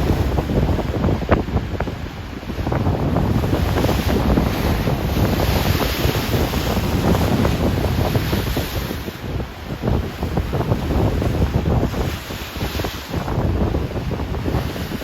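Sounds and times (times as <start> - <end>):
rough ocean waves rushing: 0.0 - 15.0
wind buffeting microphone: 0.0 - 15.0.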